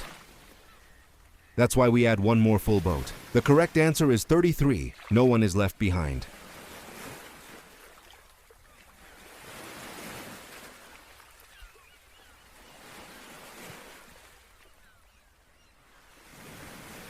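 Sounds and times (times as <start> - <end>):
ocean waves washing in: 0.0 - 0.7, 1.6 - 8.3, 8.9 - 11.6, 12.5 - 14.7, 15.9 - 17.0.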